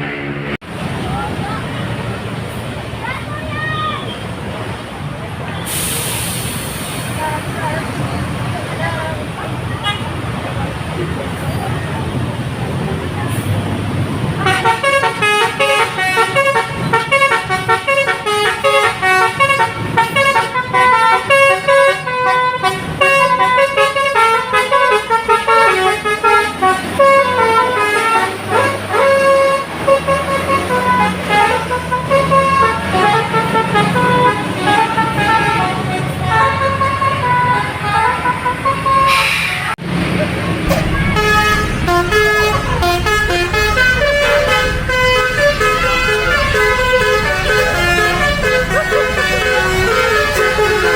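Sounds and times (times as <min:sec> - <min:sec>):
bus engine running: 0:00.0 - 0:50.9
bus musical horn tune: 0:14.3 - 0:39.4, 0:40.7 - 0:50.9.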